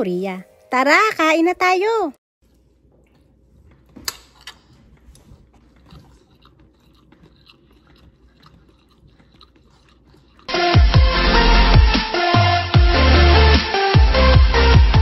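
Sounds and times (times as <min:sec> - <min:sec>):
person chewing with soft crunching: 0:02.4 - 0:10.7
electronic music with heavy beat: 0:10.5 - 0:15.0.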